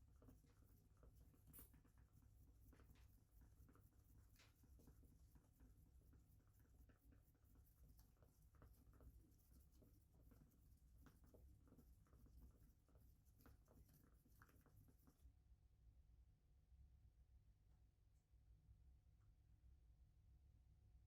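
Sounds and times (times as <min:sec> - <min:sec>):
faint scratching: 0:00.0 - 0:15.2
small irregular ticks: 0:00.0 - 0:15.2.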